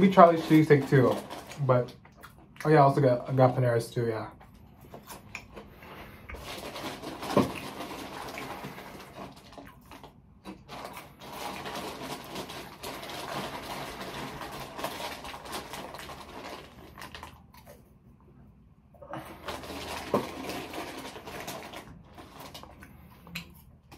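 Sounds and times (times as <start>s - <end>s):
moist chewing and crunching food: 0.3s - 2.8s, 4.4s - 18.0s.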